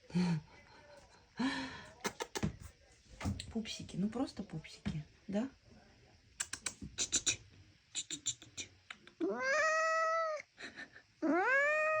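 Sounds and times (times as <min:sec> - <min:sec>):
quick sharp clicks: 0:06.4 - 0:07.3
cat meowing: 0:09.2 - 0:10.4, 0:11.2 - 0:12.0.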